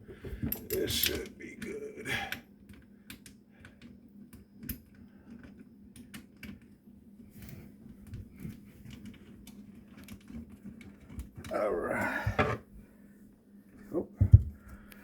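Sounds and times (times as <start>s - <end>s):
light clicks and taps of parts: 2.3s - 6.8s.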